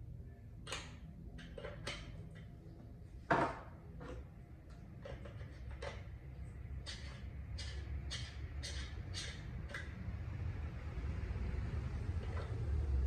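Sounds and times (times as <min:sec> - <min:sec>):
plastic parts clicking and knocking: 0:00.6 - 0:02.5, 0:03.3 - 0:06.1.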